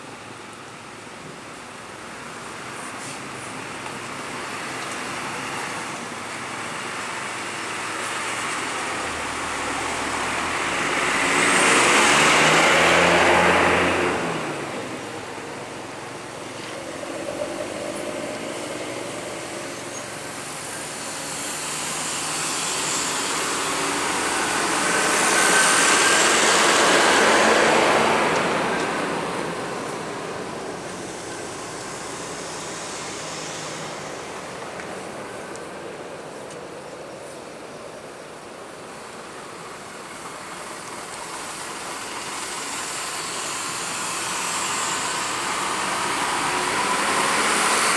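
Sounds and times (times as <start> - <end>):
buses driving past: 0.0 - 47.9.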